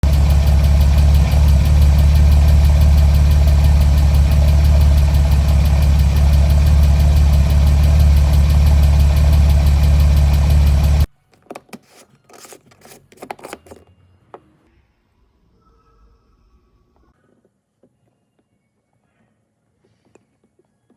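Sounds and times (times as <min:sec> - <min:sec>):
car engine idling: 0:00.0 - 0:11.1
engine tappet noise: 0:00.0 - 0:11.1.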